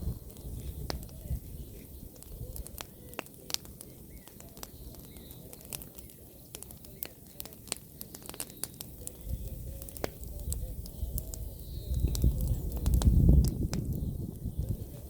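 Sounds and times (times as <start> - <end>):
low rumble: 0.0 - 0.3
bonfire crackling and popping: 0.0 - 15.0.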